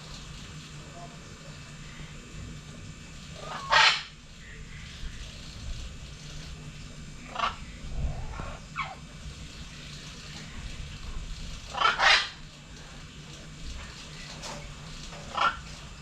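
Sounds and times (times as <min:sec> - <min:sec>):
short animal calls: 0:03.4 - 0:04.2.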